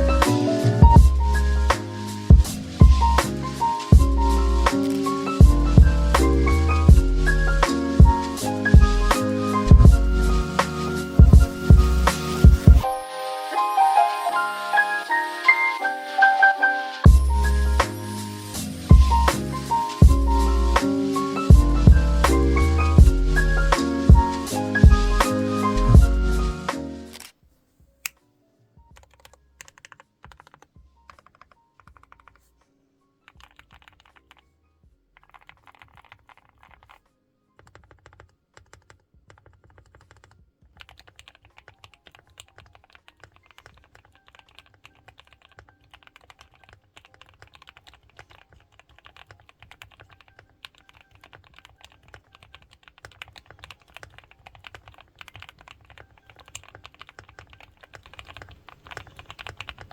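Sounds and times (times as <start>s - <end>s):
typing on mechanical keyboard: 28.9s - 32.4s, 33.3s - 34.4s, 35.2s - 37.0s, 37.6s - 59.9s.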